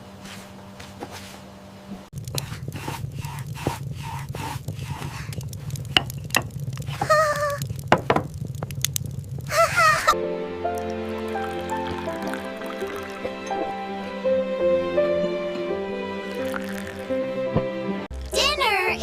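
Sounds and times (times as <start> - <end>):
steady low hum: 0.0 - 10.1.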